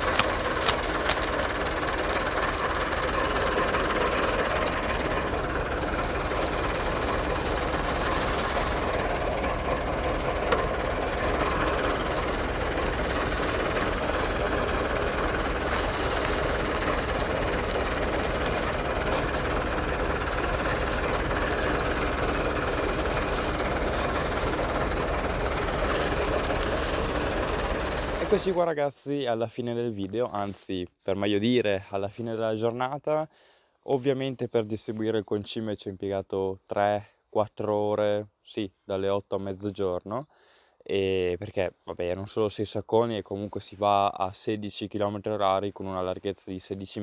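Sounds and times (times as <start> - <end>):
tractor diesel engine clattering: 0.0 - 28.6.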